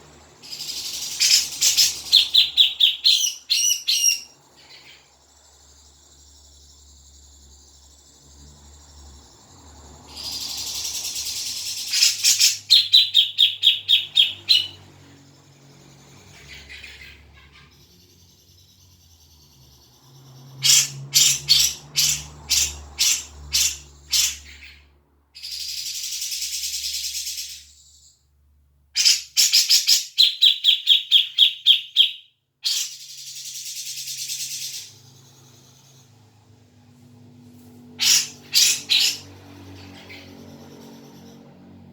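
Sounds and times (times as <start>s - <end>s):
bird harsh rasping calls: 0.0s - 5.1s, 10.1s - 15.0s, 20.4s - 24.8s, 29.0s - 35.9s, 37.9s - 41.4s.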